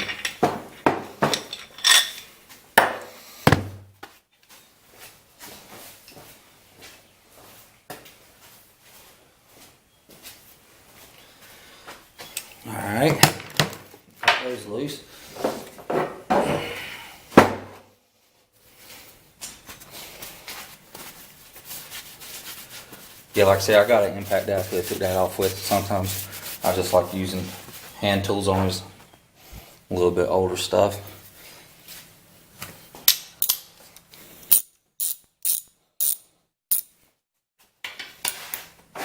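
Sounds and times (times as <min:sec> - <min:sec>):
tools knocking on workbench: 0:00.0 - 0:01.6, 0:02.8 - 0:03.8
hand ratchet clicking: 0:34.5 - 0:36.9.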